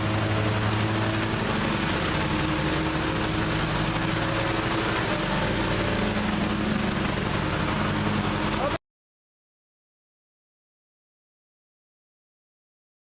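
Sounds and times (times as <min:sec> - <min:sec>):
riding mower engine running: 0:00.0 - 0:08.8.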